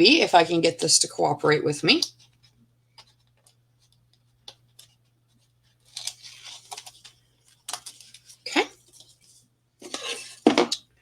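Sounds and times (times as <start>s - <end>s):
scratchy paper rustle: 2.1s - 10.5s
fingers ticking and tapping on card: 2.9s - 5.0s.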